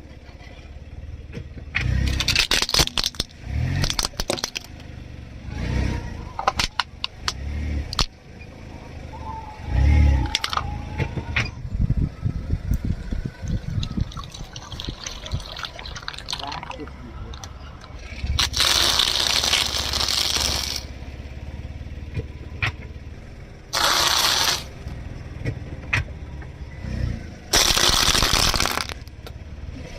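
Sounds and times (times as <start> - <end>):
car rumble: 0.0 - 29.9
tyre crunching objects: 2.0 - 4.8, 17.2 - 20.9, 23.7 - 24.7, 27.5 - 29.1.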